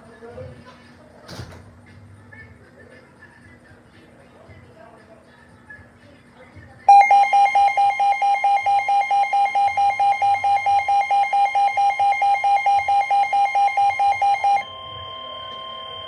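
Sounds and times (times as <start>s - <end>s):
emergency alarm beeping rapidly: 6.9s - 16.0s
steady alert tone: 6.9s - 16.0s.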